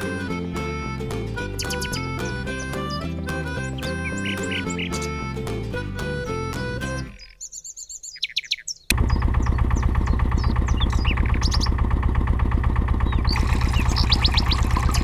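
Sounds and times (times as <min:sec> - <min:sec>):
birds chirping: 0:01.4 - 0:11.8, 0:13.1 - 0:15.0
small engine chugging: 0:08.9 - 0:15.0.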